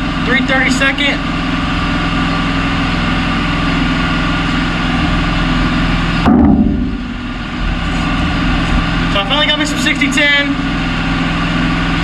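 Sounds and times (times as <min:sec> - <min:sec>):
engine idling: 0:00.0 - 0:12.0
loud bump: 0:06.2 - 0:08.0.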